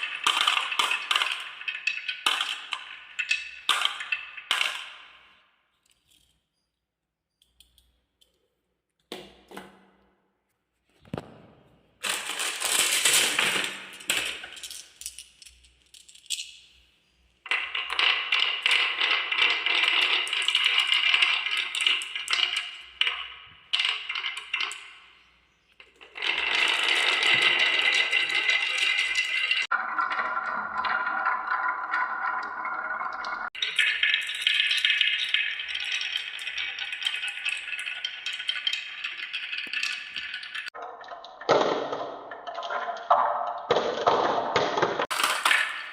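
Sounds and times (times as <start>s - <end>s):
marbles rattling down wooden track: 0.0s - 5.3s, 12.0s - 16.5s, 17.5s - 25.1s, 25.8s - 29.8s, 43.7s - 45.9s.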